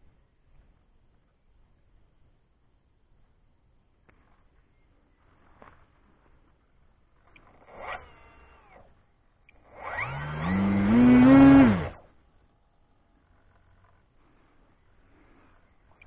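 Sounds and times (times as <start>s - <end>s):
model aircraft motor spinning propeller: 7.2s - 12.1s.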